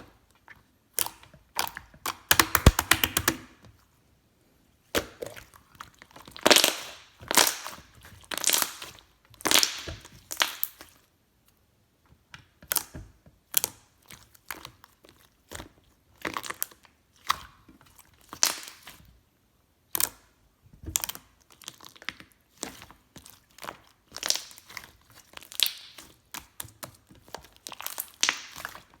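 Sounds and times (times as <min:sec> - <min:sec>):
slime crackling and squishing: 0:00.3 - 0:03.4, 0:05.1 - 0:11.0, 0:13.6 - 0:19.2, 0:21.0 - 0:29.0.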